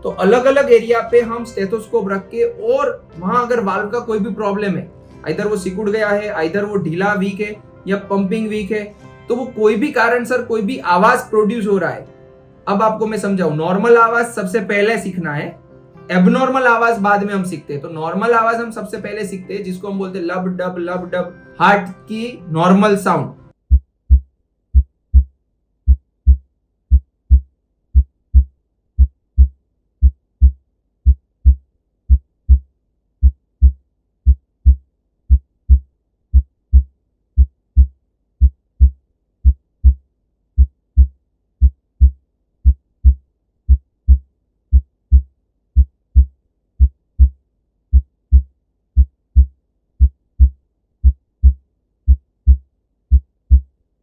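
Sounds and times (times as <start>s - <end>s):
heartbeat thumps: 23.7s - 25.3s, 25.9s - 32.6s, 33.2s - 40.0s, 40.6s - 53.7s.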